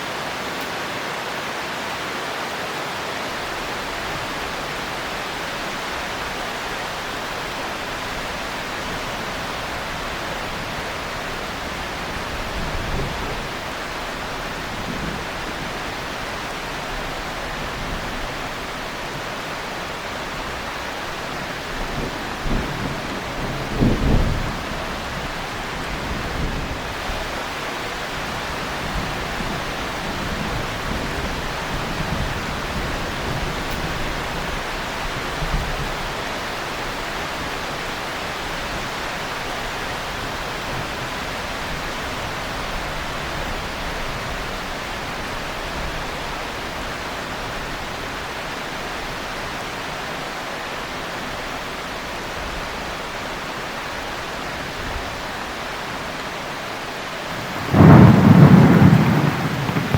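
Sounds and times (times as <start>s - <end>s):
heavy rain falling: 0.0s - 59.9s
distant thunder rumbles: 57.3s - 59.9s.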